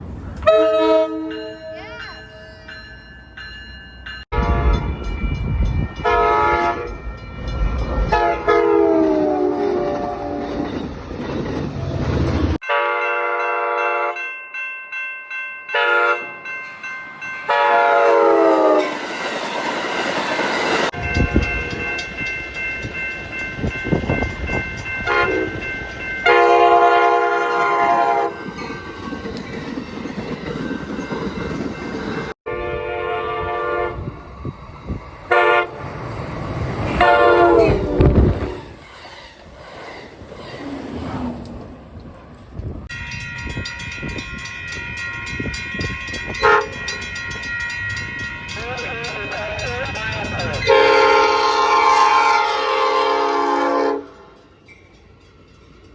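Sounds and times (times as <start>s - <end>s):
rail wheel noise: 0.0s - 55.9s
train horn chords: 0.4s - 1.6s, 4.4s - 5.0s, 6.0s - 7.0s, 8.1s - 10.6s, 12.6s - 14.2s, 15.7s - 16.3s, 17.5s - 19.0s, 25.0s - 28.4s, 32.5s - 34.2s, 35.3s - 35.8s, 36.9s - 38.4s, 46.4s - 46.8s, 50.7s - 54.4s.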